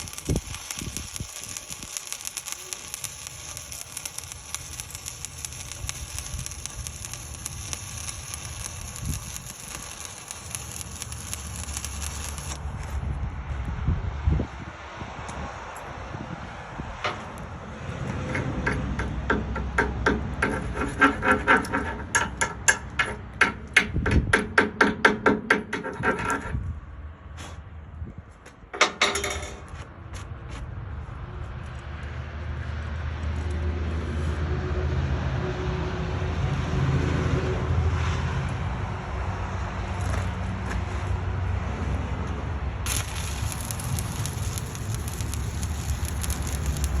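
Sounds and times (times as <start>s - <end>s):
hammer striking steel: 18.1s - 26.4s.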